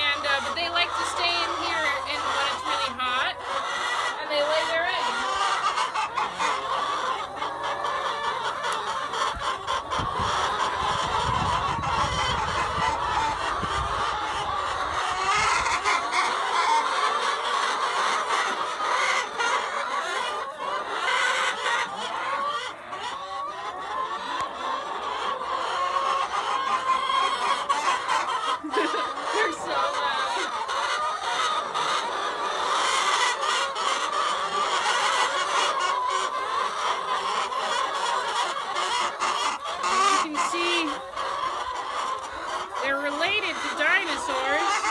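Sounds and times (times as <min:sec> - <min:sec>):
chickens clucking: 0:00.0 - 0:44.9
low wind rumble on microphone: 0:09.9 - 0:14.2.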